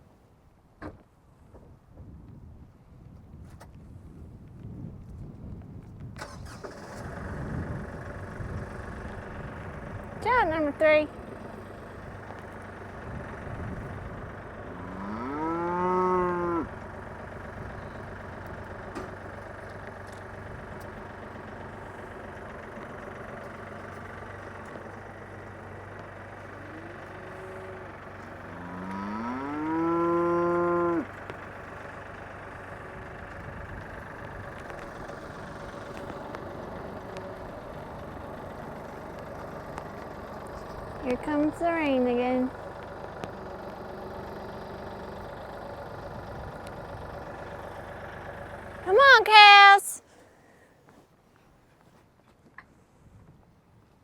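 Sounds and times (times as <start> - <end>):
cattle mooing: 14.7 - 16.7, 26.6 - 27.9, 28.5 - 31.1.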